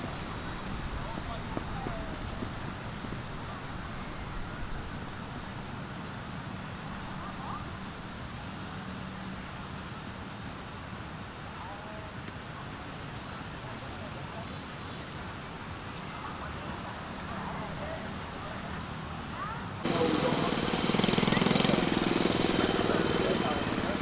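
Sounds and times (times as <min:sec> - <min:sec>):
distant voices: 0:00.0 - 0:04.7, 0:19.8 - 0:24.0.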